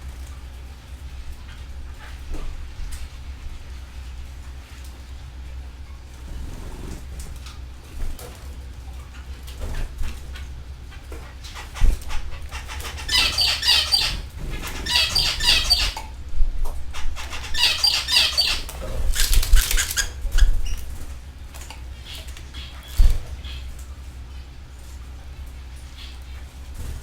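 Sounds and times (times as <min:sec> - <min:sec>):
canaries trilling: 0:10.9 - 0:16.1, 0:16.9 - 0:21.1, 0:21.8 - 0:23.8, 0:25.8 - 0:26.9.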